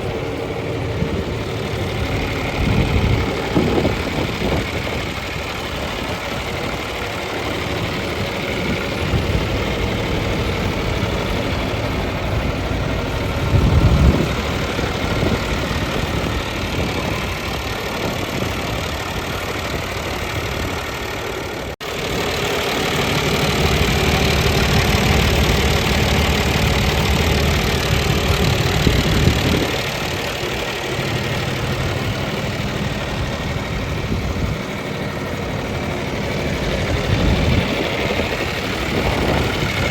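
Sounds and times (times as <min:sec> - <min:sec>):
tractor diesel engine idling: 0:00.0 - 0:39.9.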